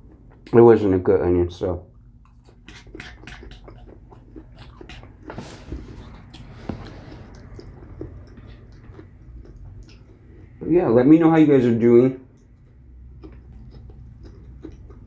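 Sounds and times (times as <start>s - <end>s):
wet mouth clicks: 1.9s - 5.4s, 7.2s - 10.6s
chewing and biting pizza: 1.9s - 10.6s, 12.3s - 15.0s.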